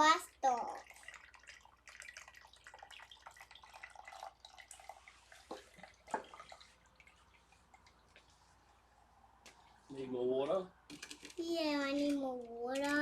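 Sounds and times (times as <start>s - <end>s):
water drips: 0.0s - 8.4s
water trickling into plastic container: 0.0s - 8.6s.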